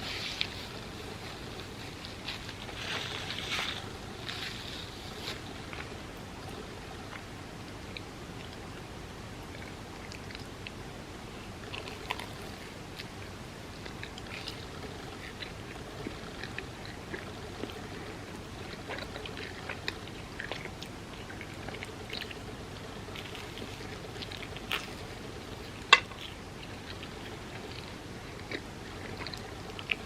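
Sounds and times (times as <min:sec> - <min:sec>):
chewing with wet mouth clicks: 0:05.2 - 0:10.8, 0:11.6 - 0:30.0.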